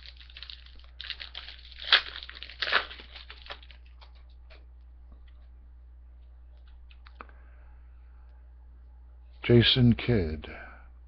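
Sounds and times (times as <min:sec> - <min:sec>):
plastic wrapper ripping: 0:00.0 - 0:04.2
plastic wrapper crinkling: 0:00.0 - 0:04.6.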